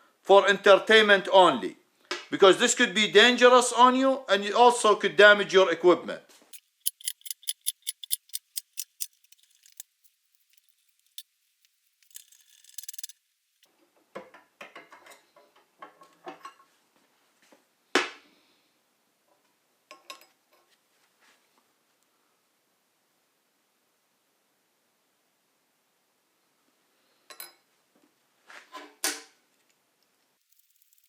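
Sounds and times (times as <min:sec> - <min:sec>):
sharp metal clank: 0:06.6 - 0:11.2
metal tools clinking: 0:06.6 - 0:13.1, 0:30.5 - 0:31.0
sharp clicks: 0:06.6 - 0:13.1
short rattle: 0:06.6 - 0:13.1, 0:30.5 - 0:31.0.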